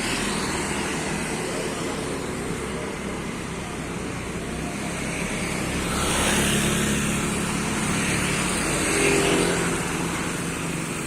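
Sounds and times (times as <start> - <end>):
street traffic: 0.0 - 11.0
vehicle engine running close by: 0.0 - 11.0.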